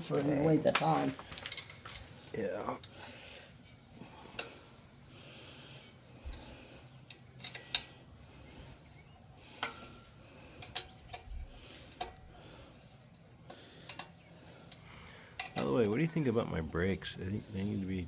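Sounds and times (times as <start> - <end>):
metal tools clinking: 0.6 - 2.9.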